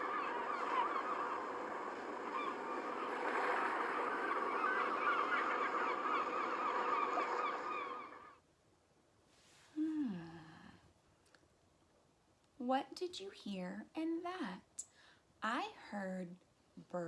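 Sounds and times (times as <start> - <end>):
ocean waves: 0.0 - 8.4
seagulls calling: 0.0 - 8.4.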